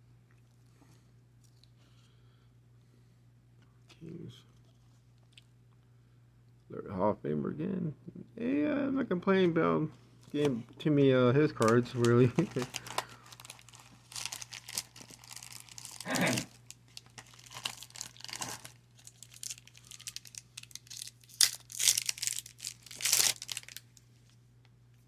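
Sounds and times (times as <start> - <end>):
cards and wrapper crinkling: 11.4 - 24.3.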